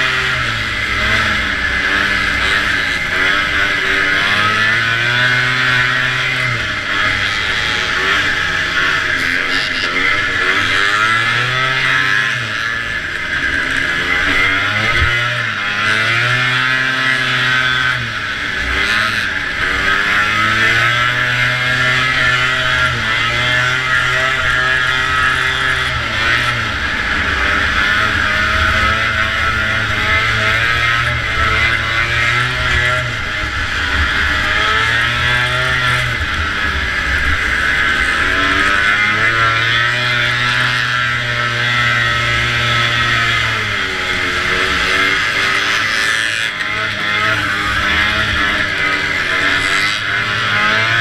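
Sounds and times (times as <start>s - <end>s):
snowmobile engine revving: 0.0s - 51.0s.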